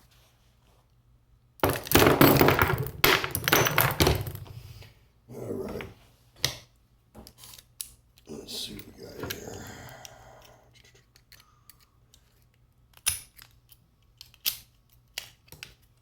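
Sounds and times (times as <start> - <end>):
hard objects clattering: 1.6 - 4.7.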